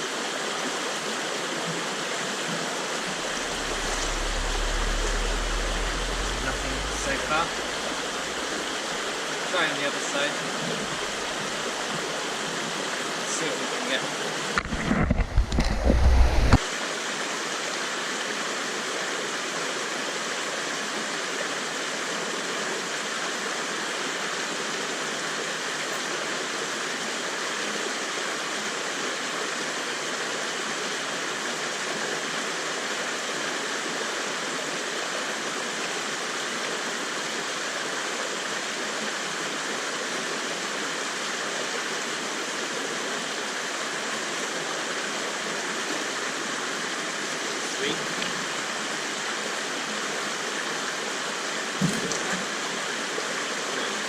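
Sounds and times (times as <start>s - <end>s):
river water rushing: 0.0s - 54.0s
low rumble on microphone: 2.9s - 9.2s, 10.5s - 12.2s, 14.7s - 16.6s.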